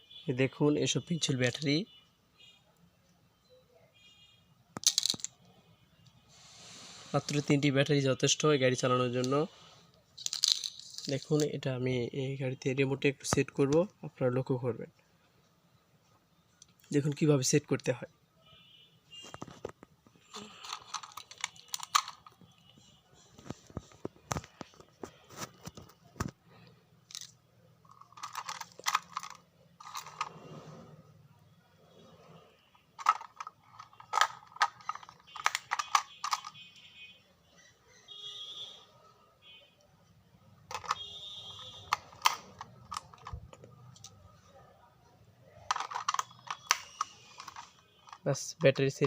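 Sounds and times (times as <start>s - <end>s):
plastic clicks and rattling: 4.8s - 5.4s, 19.3s - 22.4s, 27.1s - 30.3s, 33.0s - 36.6s, 40.7s - 44.2s, 45.7s - 48.2s.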